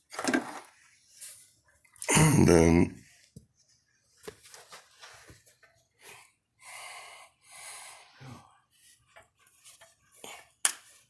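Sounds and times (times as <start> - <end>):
soft breathing: 5.2 - 9.1.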